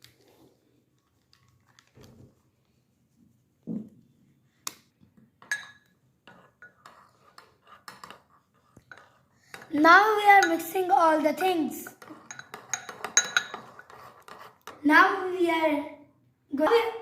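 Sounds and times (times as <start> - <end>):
utensils clinking against bowl: 5.4 - 5.9, 6.5 - 14.8.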